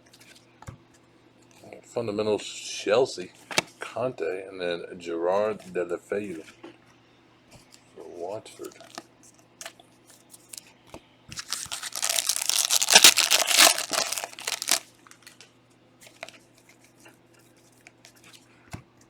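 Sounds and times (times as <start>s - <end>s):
foil wrapper ripping: 11.3s - 15.4s.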